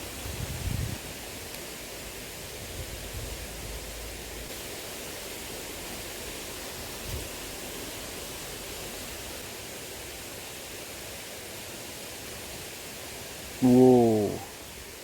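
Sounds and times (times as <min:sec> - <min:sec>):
river water rushing: 0:03.4 - 0:13.6.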